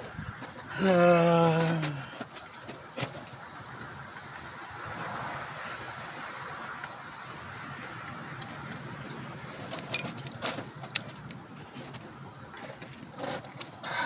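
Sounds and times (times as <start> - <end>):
small metal parts clicking: 9.6 - 12.0.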